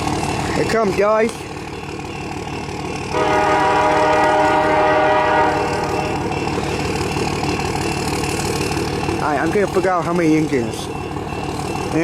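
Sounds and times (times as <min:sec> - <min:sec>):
locomotive rumble: 0:00.0 - 0:12.0
locomotive air horn blast: 0:03.1 - 0:06.4.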